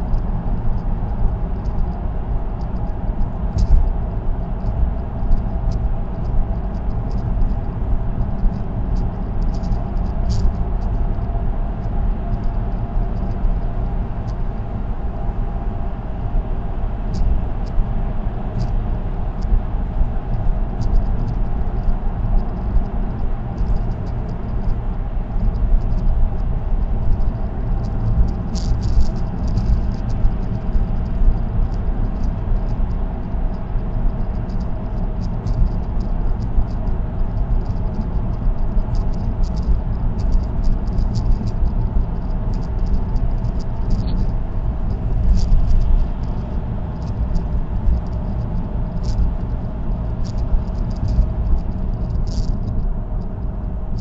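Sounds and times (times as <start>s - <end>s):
road and tyre noise: 0.0s - 54.0s
ticking rattles: 50.2s - 52.8s.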